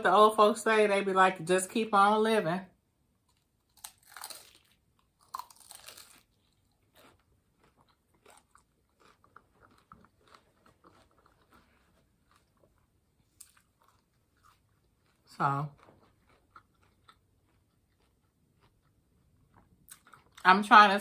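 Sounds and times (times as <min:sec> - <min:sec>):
person biting food: 0:03.3 - 0:11.4
quiet chewing with mouth clicks: 0:05.3 - 0:20.4.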